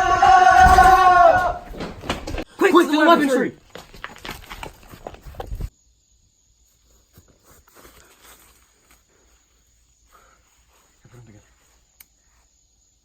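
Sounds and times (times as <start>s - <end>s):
hurried rustling and clicking: 0.0s - 5.7s
faint scattered ticks: 5.4s - 13.0s.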